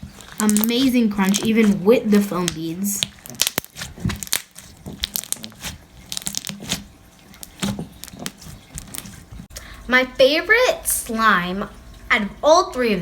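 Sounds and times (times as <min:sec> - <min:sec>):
slime crunching and crackling: 0:00.0 - 0:09.3.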